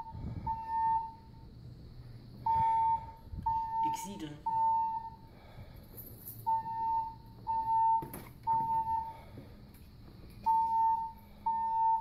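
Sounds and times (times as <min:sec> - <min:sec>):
electronic alarm beeping: 0:00.0 - 0:01.6, 0:02.4 - 0:05.3, 0:06.4 - 0:09.2, 0:10.4 - 0:12.0.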